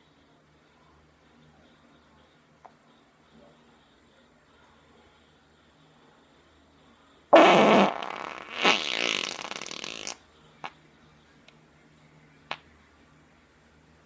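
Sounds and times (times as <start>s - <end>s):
woman farting: 7.4s - 10.2s.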